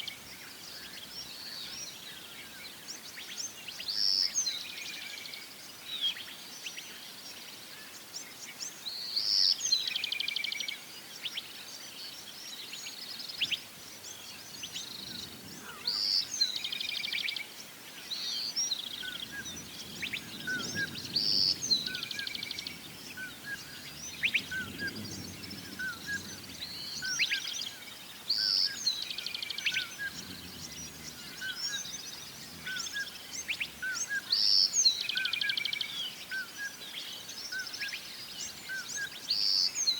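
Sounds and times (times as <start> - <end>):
birds chirping: 12.9 - 39.9
bird trilling song: 18.1 - 39.9.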